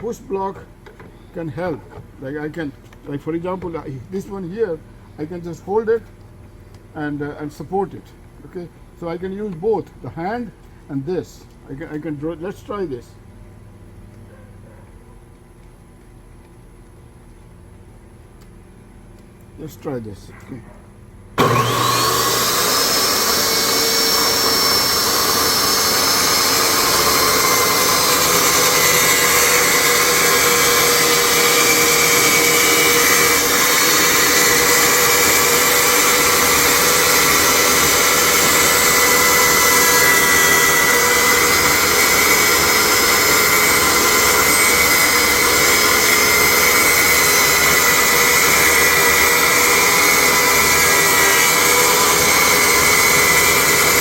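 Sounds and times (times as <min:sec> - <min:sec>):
table saw motor whine: 0:21.4 - 0:54.0.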